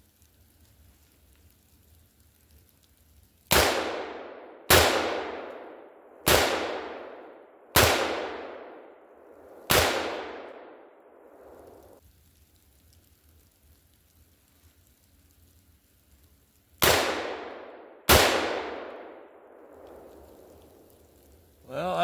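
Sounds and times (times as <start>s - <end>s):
rifle shots with echo: 3.5s - 8.9s, 9.7s - 11.6s, 16.8s - 19.8s.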